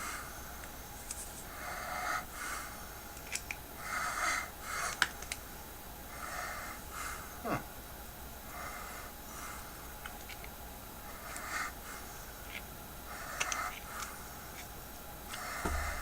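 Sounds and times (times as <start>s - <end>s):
clicks from handling small parts: 3.2s - 3.6s.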